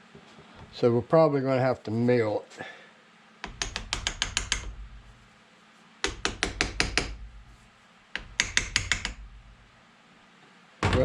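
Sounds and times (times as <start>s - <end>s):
hammer tapping on a vise: 3.4s - 5.0s, 6.0s - 7.4s, 8.2s - 9.5s.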